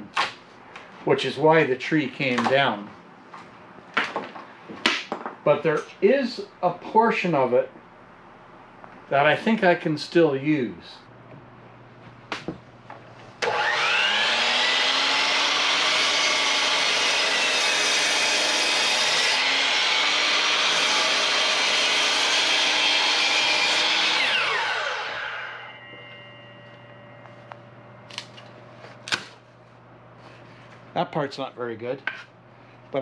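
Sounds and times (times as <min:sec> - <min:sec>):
electric power saw cutting wood: 0:13.4 - 0:27.2.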